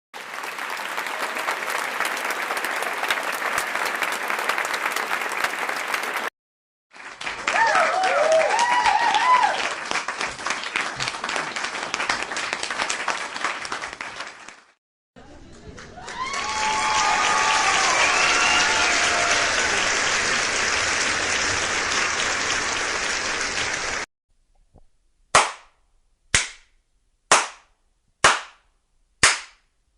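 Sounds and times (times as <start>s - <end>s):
crowd applause: 0.2s - 6.3s, 6.9s - 14.8s, 15.5s - 24.1s
voices cheering: 0.2s - 6.3s, 7.4s - 9.8s, 15.8s - 24.0s.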